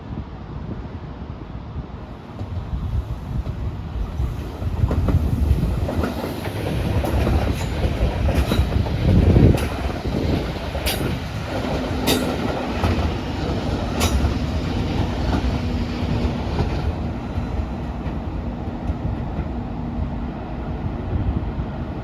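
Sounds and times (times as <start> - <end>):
train rumbling past: 0.0 - 22.0
wheels clicking over rail joints: 4.8 - 19.6.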